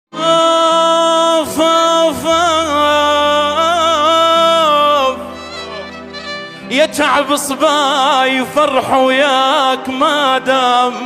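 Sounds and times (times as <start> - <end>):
man singing: 0.1 - 11.0
low steady drone: 1.6 - 6.4.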